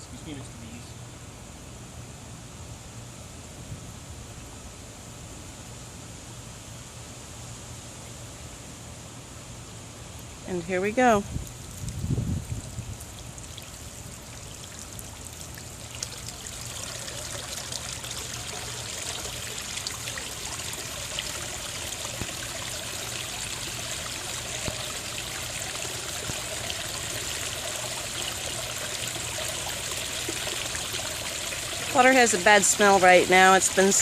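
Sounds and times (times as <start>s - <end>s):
water trickling and pouring: 11.4s - 34.0s.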